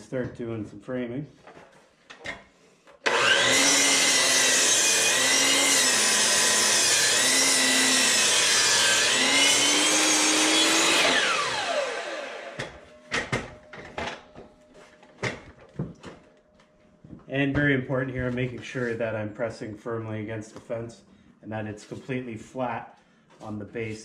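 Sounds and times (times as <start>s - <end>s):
mitre saw cutting wood: 3.0s - 12.8s
saw spinning down whine: 3.1s - 12.9s.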